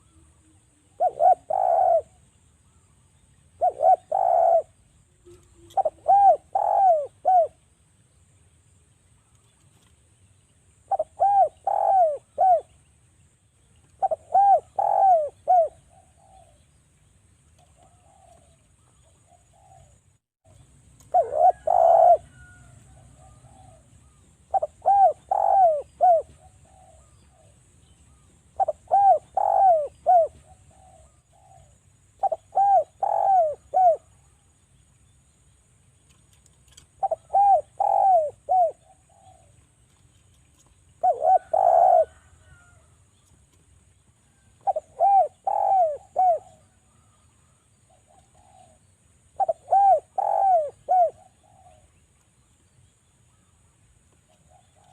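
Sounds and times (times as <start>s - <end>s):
dove cooing: 0.0s - 2.3s, 3.5s - 7.6s, 10.9s - 12.8s, 13.8s - 16.6s, 17.6s - 20.1s, 21.0s - 34.4s, 36.7s - 40.0s, 40.6s - 42.9s, 44.3s - 52.0s, 54.3s - 54.9s.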